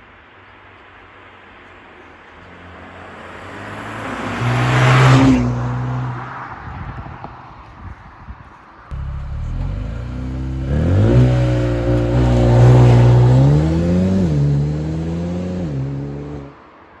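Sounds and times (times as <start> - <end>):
car driving past: 2.4 - 6.5, 8.9 - 16.5.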